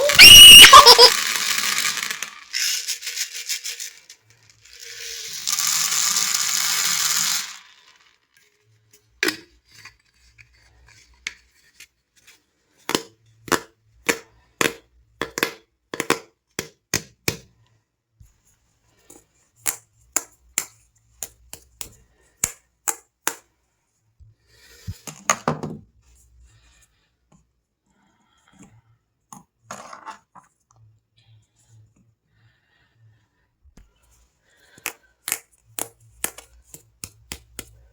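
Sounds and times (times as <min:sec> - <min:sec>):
clicks and taps of hard objects: 0:34.8 - 0:37.9.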